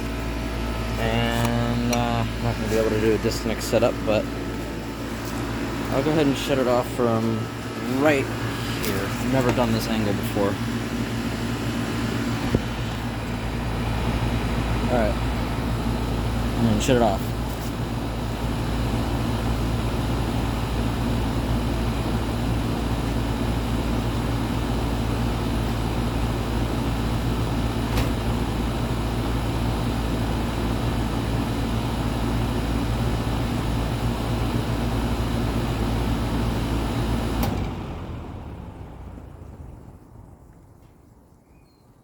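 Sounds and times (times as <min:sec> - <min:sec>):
air conditioner click: 0:00.0 - 0:06.4, 0:27.8 - 0:28.4, 0:37.3 - 0:37.8
air conditioner compressor humming: 0:00.0 - 0:42.0
condenser fan running: 0:00.0 - 0:42.0.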